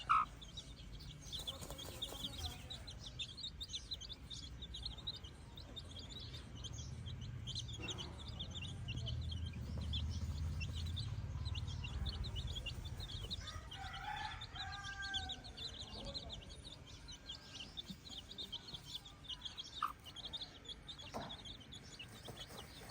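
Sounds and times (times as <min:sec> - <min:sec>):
flock of birds chirping: 0:00.0 - 0:22.9
low rumble: 0:06.2 - 0:13.5.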